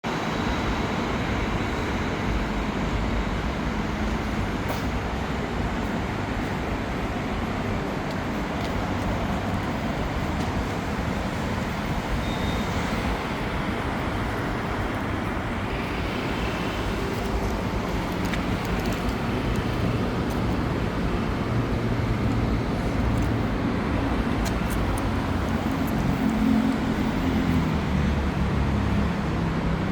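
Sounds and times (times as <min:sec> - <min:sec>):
vehicle and road noise: 0:00.0 - 0:29.9.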